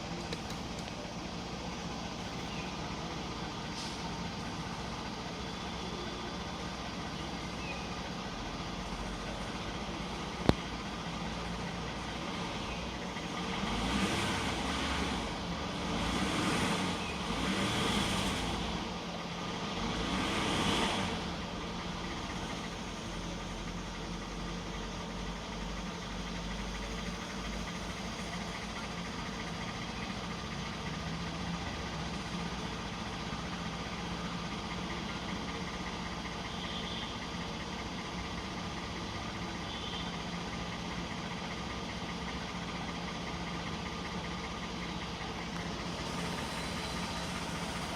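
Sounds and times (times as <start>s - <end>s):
car engine idling with knock: 0.0s - 47.9s.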